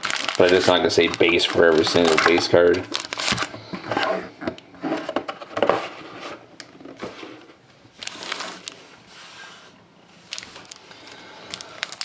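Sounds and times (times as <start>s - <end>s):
foil wrappers crinkling: 0.0s - 3.7s, 8.0s - 8.9s, 10.2s - 12.0s.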